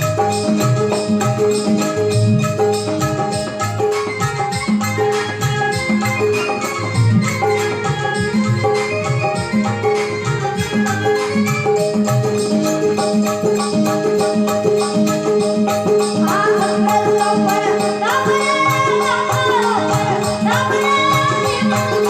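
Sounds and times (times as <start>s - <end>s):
held instrument notes: 0.0s - 22.0s
jingling percussion beat: 0.0s - 22.0s
young person singing: 16.2s - 22.0s.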